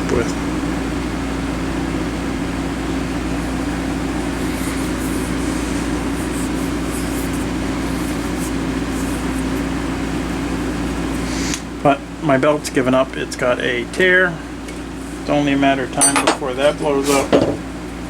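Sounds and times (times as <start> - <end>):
belt sander running: 1.0 - 11.5.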